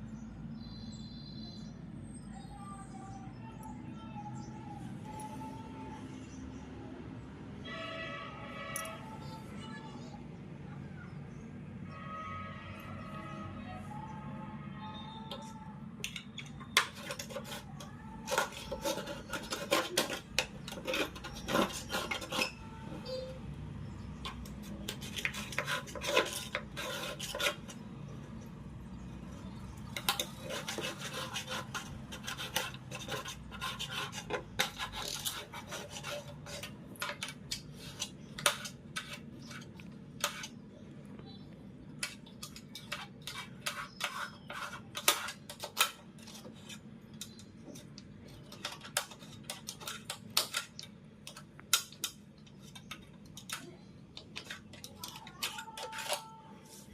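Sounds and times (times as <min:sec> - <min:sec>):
spoon scraping window track: 0:03.3 - 0:56.9.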